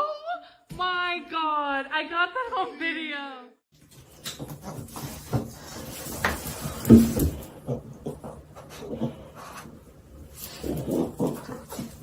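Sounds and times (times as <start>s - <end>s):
rustling: 3.8s - 12.0s.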